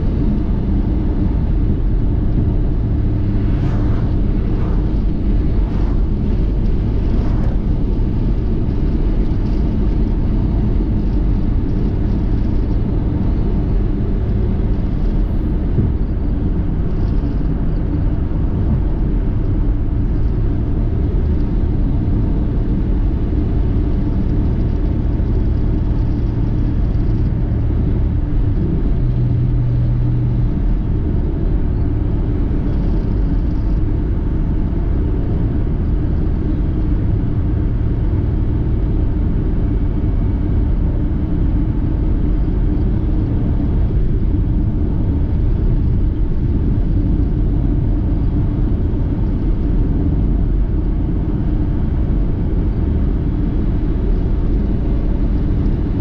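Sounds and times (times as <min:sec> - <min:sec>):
car engine and tyre rumble: 0:00.0 - 0:56.0
low hum: 0:00.0 - 0:56.0.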